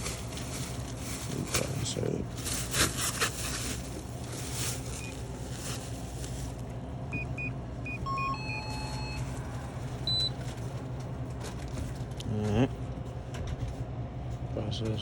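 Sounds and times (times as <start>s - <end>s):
low hum: 0.0s - 14.5s
payment terminal beeps: 7.1s - 10.4s.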